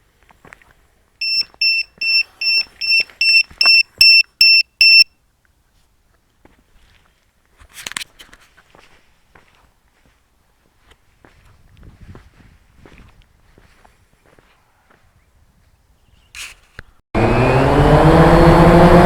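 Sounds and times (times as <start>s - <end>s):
low-battery alarm beeping: 1.2s - 5.1s
brief rustle: 7.6s - 8.7s, 16.2s - 17.0s.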